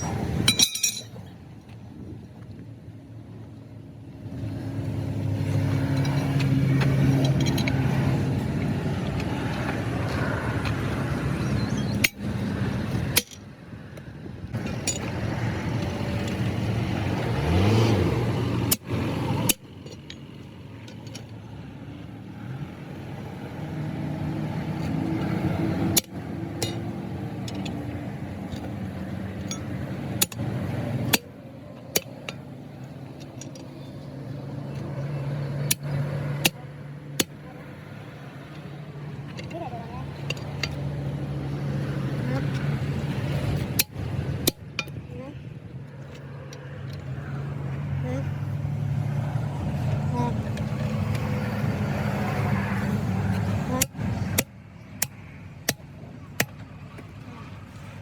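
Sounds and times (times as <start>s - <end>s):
vehicle engine running: 14.4s - 58.0s.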